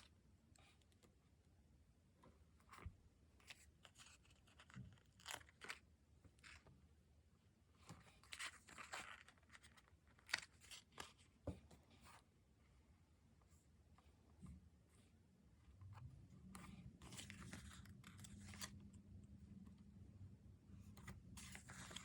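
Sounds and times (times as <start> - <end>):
paper and stickers rustling: 3.4 - 6.7, 7.9 - 12.2, 15.8 - 19.7, 20.8 - 22.0.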